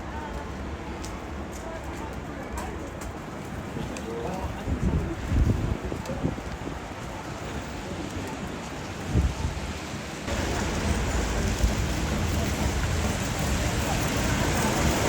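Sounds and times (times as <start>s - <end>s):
wind: 0.0s - 15.0s
traffic hiss: 6.2s - 15.0s.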